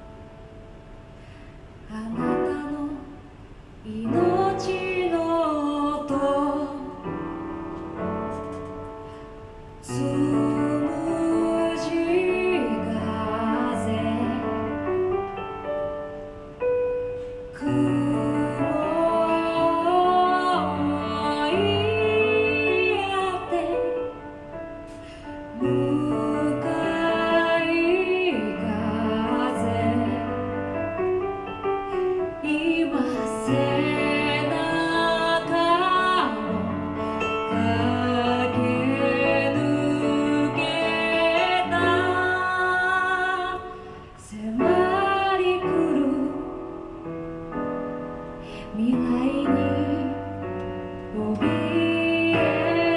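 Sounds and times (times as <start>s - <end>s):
piano: 0.0s - 52.9s
woman singing: 1.9s - 7.4s, 9.8s - 15.0s, 17.6s - 24.3s, 25.4s - 30.9s, 32.3s - 46.9s, 48.5s - 52.9s.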